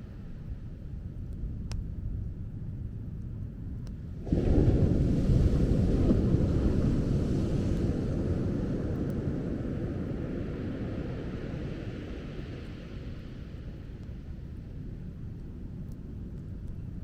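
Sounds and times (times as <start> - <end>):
wave breaking on beach: 4.2 - 13.1.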